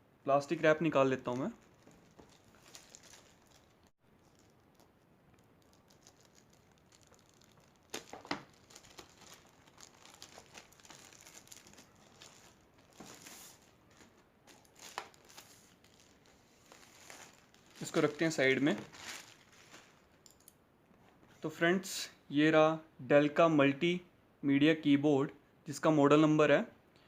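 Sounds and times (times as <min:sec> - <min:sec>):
plastic wrap crinkling and tearing: 0:01.2 - 0:20.2.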